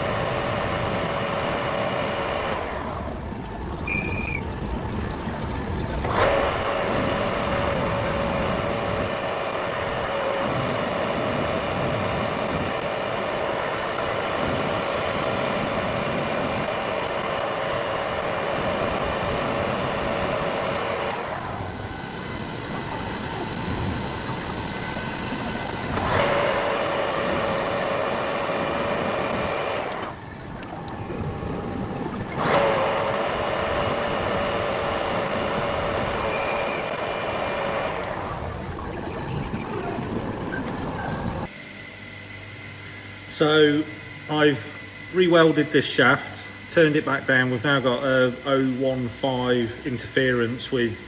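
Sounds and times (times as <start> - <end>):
metal lathe cutting: 0.0 - 2.9, 6.1 - 30.2, 32.4 - 38.4.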